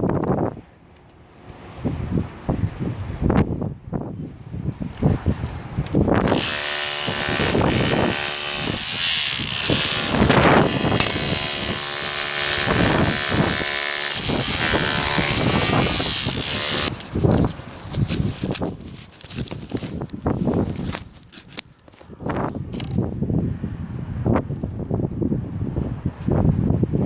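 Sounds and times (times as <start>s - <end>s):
small motor buzzing whine: 6.2s - 17.5s.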